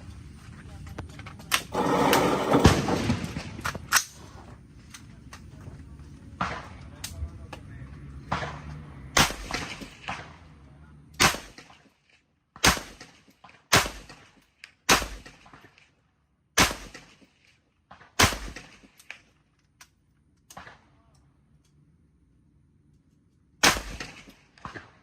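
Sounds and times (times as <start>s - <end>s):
fainter gunshots: 1.8s - 3.9s, 8.2s - 10.6s, 11.2s - 11.8s, 12.6s - 14.3s, 23.6s - 25.0s
rifle firing single shots: 8.2s - 10.5s, 11.2s - 11.8s, 12.6s - 15.8s, 16.6s - 17.3s, 17.9s - 19.2s, 23.6s - 25.0s.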